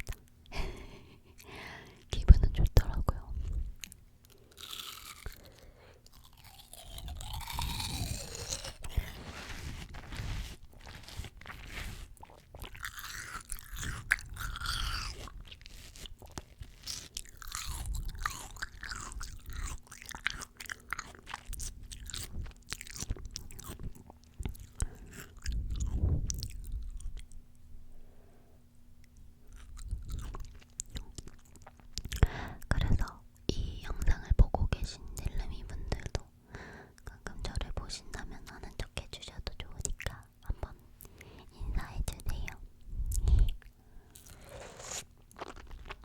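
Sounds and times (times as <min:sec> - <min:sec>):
biting and chewing fruit: 0:03.4 - 0:27.5, 0:29.0 - 0:33.2, 0:42.5 - 0:46.0.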